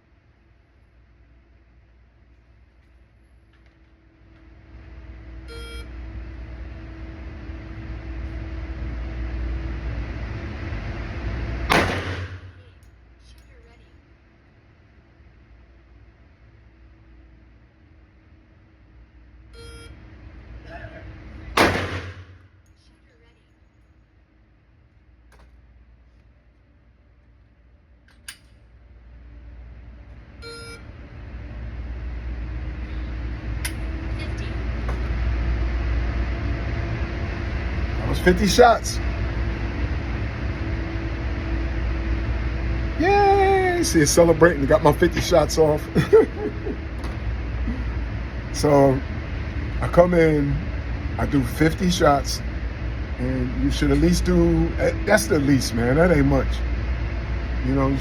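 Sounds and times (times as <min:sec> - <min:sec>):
low rumbling noise: 0:00.0 - 0:23.3, 0:24.0 - 0:58.0
short electronic beep: 0:05.5 - 0:05.9, 0:30.4 - 0:30.8
sharp crack: 0:11.7 - 0:12.6, 0:21.6 - 0:22.4.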